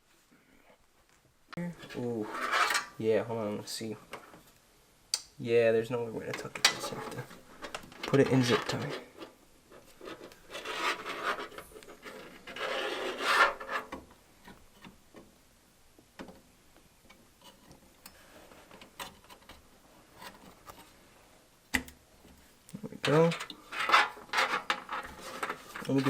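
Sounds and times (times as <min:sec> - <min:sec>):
cables rubbing: 0:06.7 - 0:14.0, 0:23.0 - 0:26.0.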